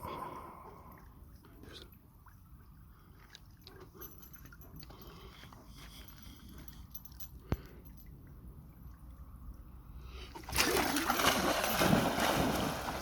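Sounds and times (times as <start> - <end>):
dog splashing in water: 10.4 - 13.0.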